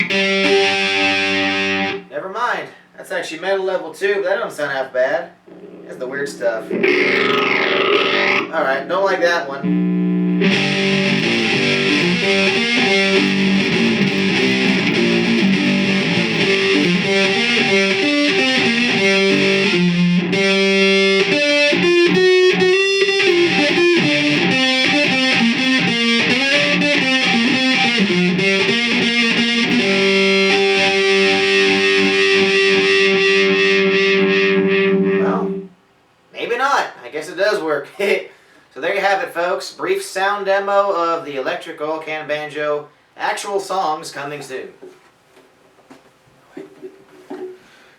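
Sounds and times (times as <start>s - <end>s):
distorted electric banjo: 0.0s - 2.1s, 5.4s - 35.7s.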